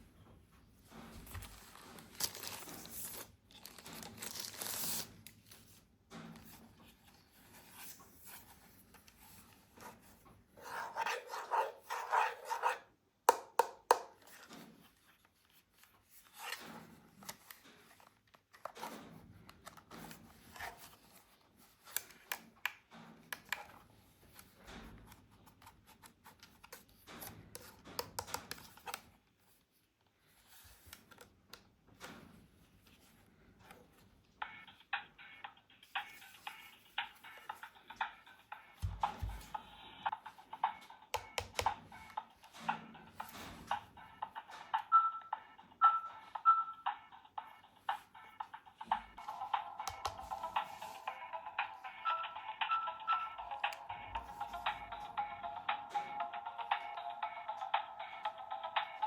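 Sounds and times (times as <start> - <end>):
cardboard and plastic tearing: 1.6 - 5.5.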